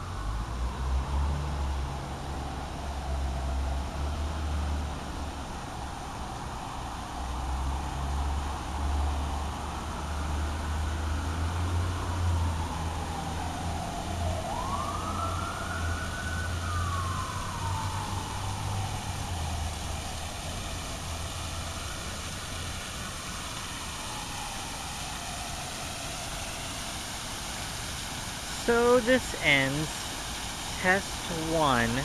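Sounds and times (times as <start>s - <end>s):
siren wailing: 12.8s - 20.0s.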